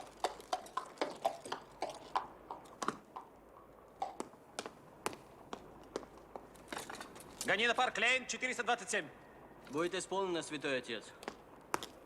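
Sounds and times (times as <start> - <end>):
horse hooves on cobblestones: 0.0 - 8.0, 11.1 - 12.0.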